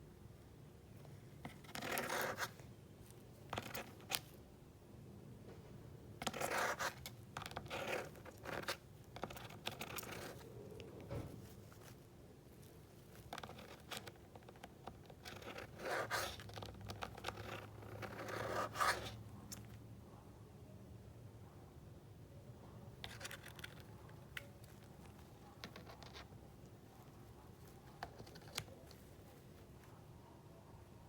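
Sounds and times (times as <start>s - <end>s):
parrot beak scratching and nibbling: 6.2s - 19.8s, 23.0s - 30.0s.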